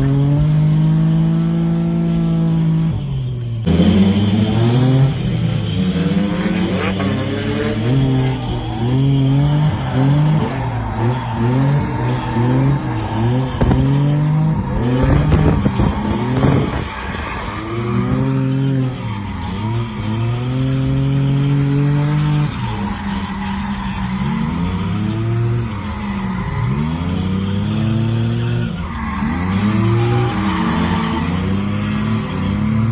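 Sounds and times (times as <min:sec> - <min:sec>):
tires skidding and squealing: 0:00.0 - 0:32.9
car engine revving hard: 0:03.7 - 0:17.0.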